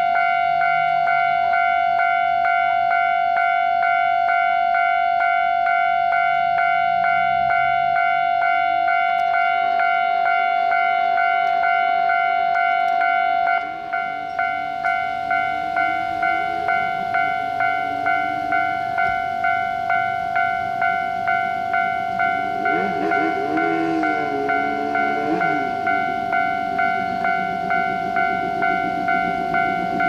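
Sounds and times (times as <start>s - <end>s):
level crossing bell ringing: 0.2s - 30.0s.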